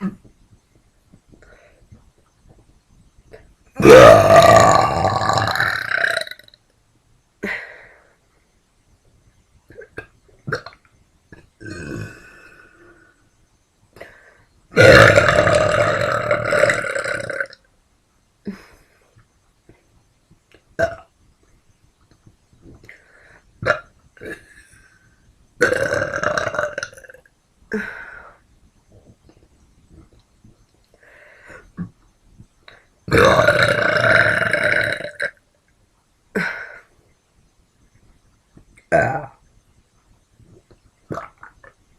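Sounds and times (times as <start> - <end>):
woman burping: 3.8 - 6.4, 11.4 - 12.6, 14.8 - 17.6, 23.6 - 24.7, 25.6 - 28.1, 33.1 - 35.4, 38.8 - 39.4.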